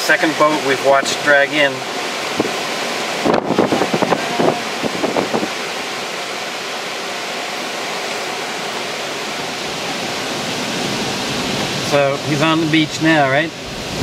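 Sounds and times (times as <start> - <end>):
surf: 0.0 - 14.0
strong wind rushing: 1.9 - 6.2, 13.4 - 14.0.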